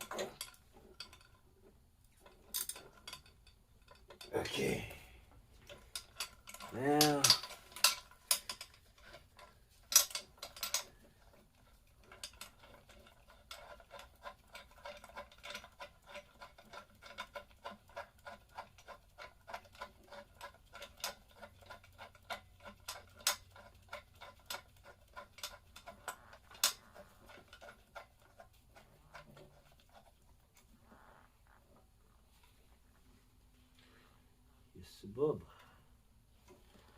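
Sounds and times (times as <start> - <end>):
hand tools clicking on metal: 5.6 - 28.5.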